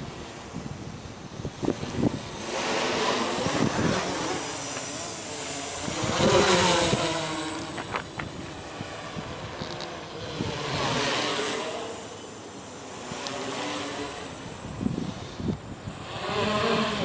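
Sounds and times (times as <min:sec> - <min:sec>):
wind rumbling on microphone: 0:00.0 - 0:04.6, 0:05.4 - 0:11.2, 0:14.4 - 0:17.0
drone propellers buzzing: 0:00.0 - 0:17.0.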